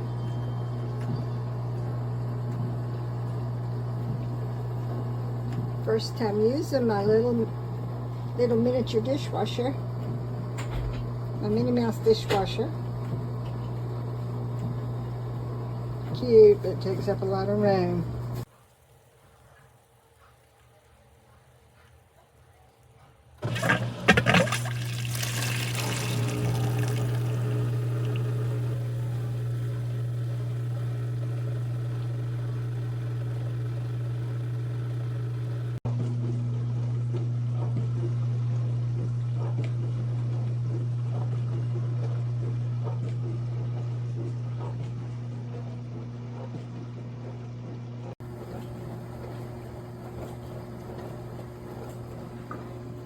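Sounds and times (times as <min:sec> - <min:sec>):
low pump hum: 0:00.0 - 0:53.0
dishwasher water spraying: 0:23.4 - 0:35.8.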